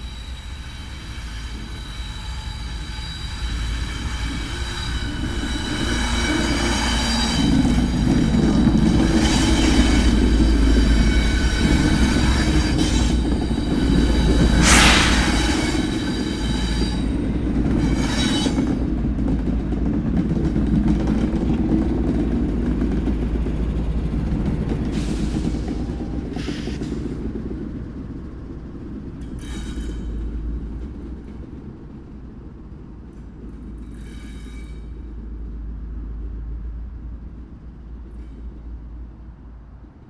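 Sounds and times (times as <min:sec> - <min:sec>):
wheels squealing on rails: 0:00.0 - 0:32.5, 0:33.6 - 0:35.5
train rumbling: 0:00.0 - 0:40.0
loud hiss burst: 0:14.2 - 0:16.8.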